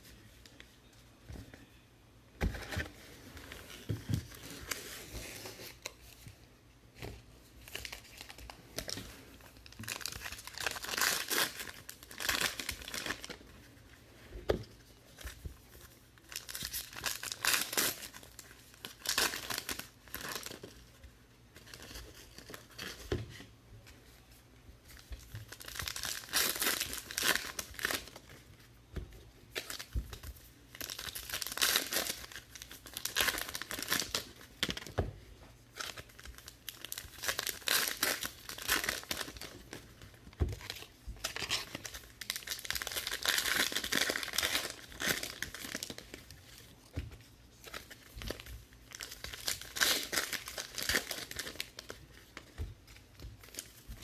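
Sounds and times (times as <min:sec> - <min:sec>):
wrappers tearing and crinkling: 0:09.6 - 0:13.4, 0:16.2 - 0:20.7, 0:25.5 - 0:28.3, 0:30.7 - 0:34.9, 0:35.7 - 0:46.4, 0:47.6 - 0:52.5.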